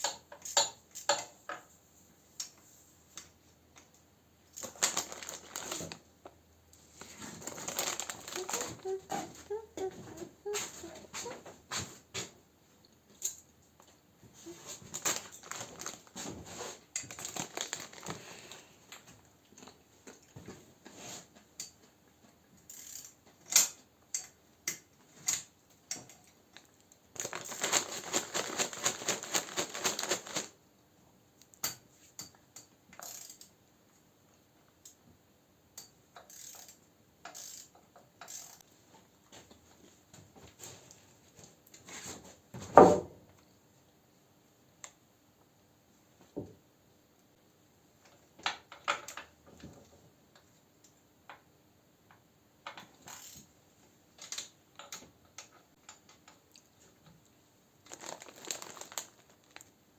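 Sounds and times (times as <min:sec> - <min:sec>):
hand tools clicking on metal: 0:00.0 - 0:01.6.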